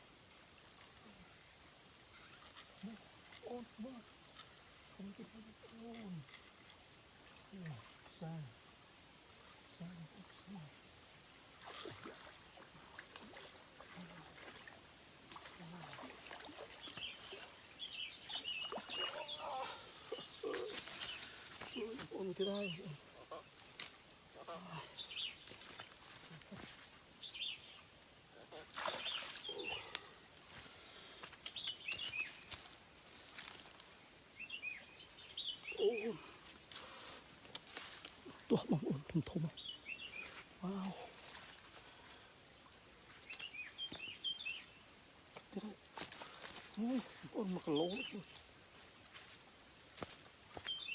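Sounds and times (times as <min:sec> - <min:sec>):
insects droning: 0:00.0 - 0:50.9
birds chirping: 0:31.4 - 0:32.5.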